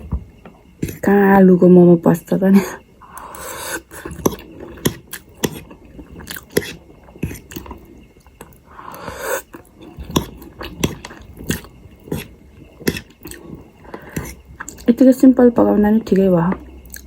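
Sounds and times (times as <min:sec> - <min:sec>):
person chewing food: 0:03.1 - 0:14.9
wet mouth clicks: 0:09.4 - 0:13.4.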